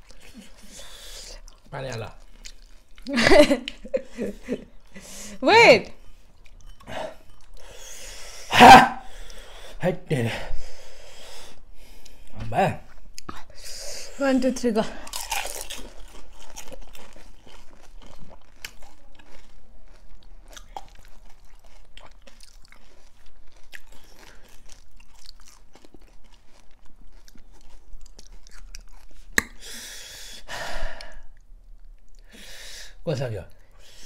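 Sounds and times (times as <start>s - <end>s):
crunchy food chewing: 0.0s - 4.9s, 5.9s - 8.0s, 15.0s - 30.1s.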